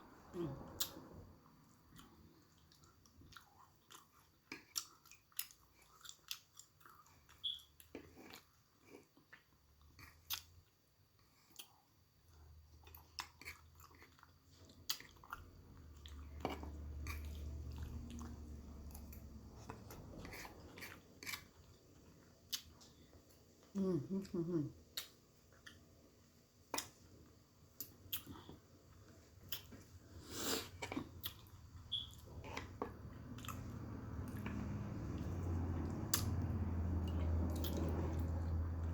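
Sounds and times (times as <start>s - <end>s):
person chewing food: 0.7s - 38.9s
low rumble: 32.1s - 38.9s.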